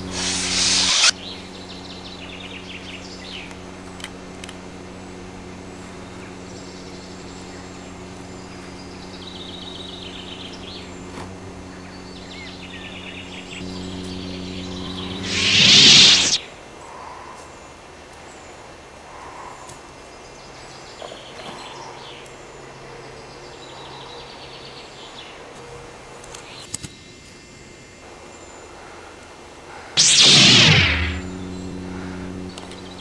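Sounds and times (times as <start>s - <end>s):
birds chirping: 0.0s - 16.4s
loud hissing burst: 0.0s - 16.4s, 30.0s - 33.0s
steady low hum: 0.0s - 16.7s, 29.9s - 33.0s.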